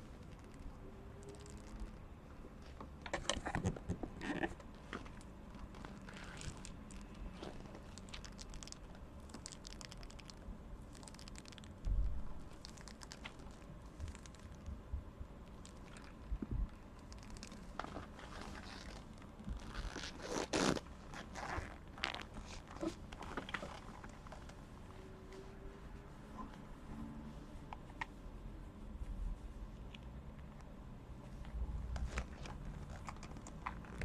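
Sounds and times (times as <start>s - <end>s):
long nails clicking and scratching: 0.0s - 2.0s, 2.7s - 14.8s, 15.4s - 20.7s, 31.9s - 34.0s.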